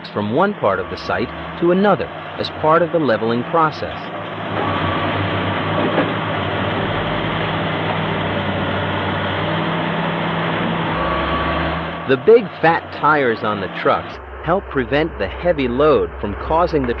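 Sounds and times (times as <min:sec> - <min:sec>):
dump truck diesel engine running: 0:00.0 - 0:17.0.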